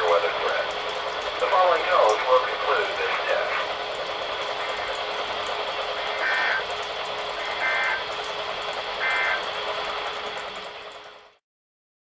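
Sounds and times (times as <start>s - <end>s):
radio static: 1.4s - 3.7s, 6.0s - 6.6s, 7.4s - 8.0s
digital data tone bursts: 6.0s - 6.6s, 7.4s - 8.1s, 9.0s - 9.4s.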